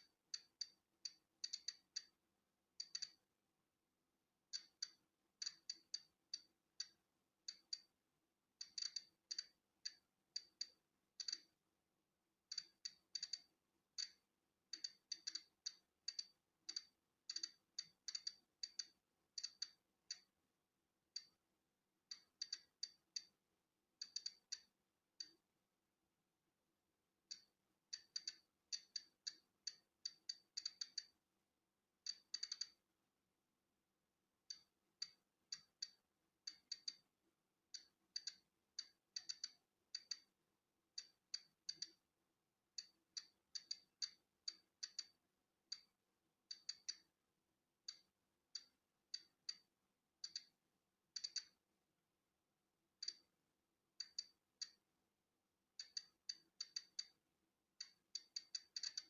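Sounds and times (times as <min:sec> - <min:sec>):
geiger counter clicking: 0:00.0 - 0:02.2, 0:02.8 - 0:03.2, 0:04.5 - 0:07.9, 0:08.6 - 0:11.5, 0:12.5 - 0:20.3, 0:22.1 - 0:23.4, 0:24.0 - 0:25.4, 0:27.3 - 0:31.1, 0:32.1 - 0:32.8, 0:34.5 - 0:37.1, 0:37.7 - 0:40.3, 0:41.0 - 0:42.0, 0:42.8 - 0:45.9, 0:46.5 - 0:47.1, 0:47.9 - 0:50.6, 0:51.2 - 0:51.6, 0:53.0 - 0:53.3, 0:54.0 - 0:54.8, 0:55.8 - 0:57.2, 0:57.8 - 0:59.0.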